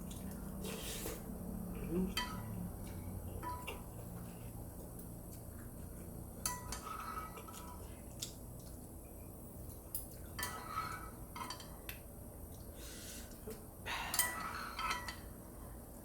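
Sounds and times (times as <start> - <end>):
utensils clinking against a bowl: 1.8 - 4.4, 6.4 - 8.4, 9.7 - 11.9, 14.0 - 15.4.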